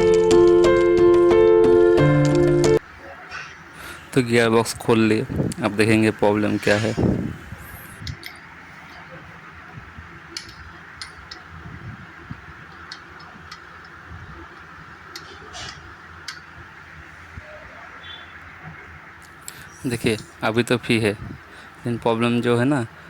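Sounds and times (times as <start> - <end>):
steady hiss: 3.7 - 8.8.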